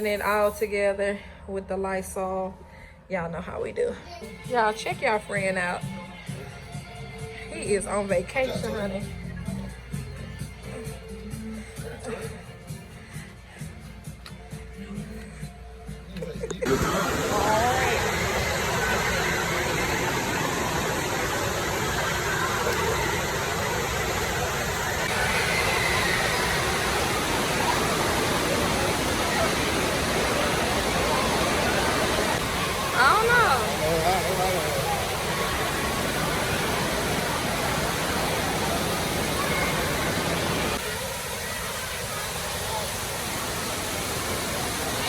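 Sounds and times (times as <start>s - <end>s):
distant voices: 4.3s - 45.0s
water pouring and splashing: 16.6s - 45.0s.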